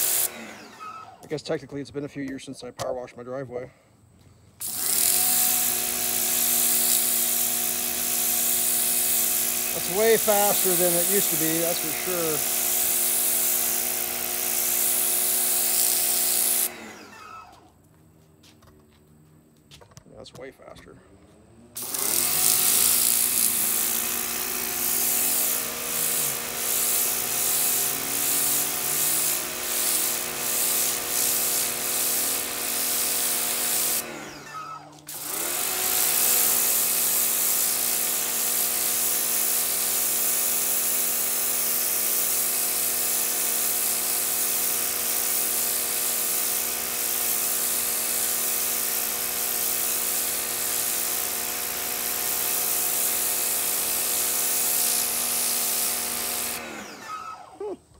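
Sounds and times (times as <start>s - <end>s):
high-pressure spray hissing: 0.0s - 0.4s, 4.6s - 16.7s, 21.8s - 34.1s, 35.0s - 56.7s
pressure washer motor whine: 0.0s - 1.3s, 4.6s - 17.7s, 21.8s - 57.7s.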